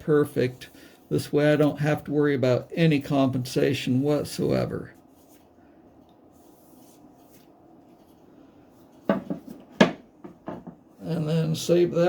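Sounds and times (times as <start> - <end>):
faint steady hum: 0.0 - 12.0
light knocks and rubbing: 8.8 - 10.9.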